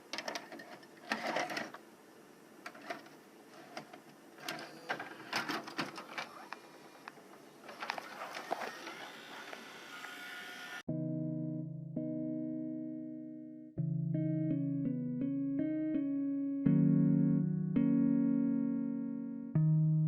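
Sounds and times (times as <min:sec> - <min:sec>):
steady background hiss: 0:00.0 - 0:10.7.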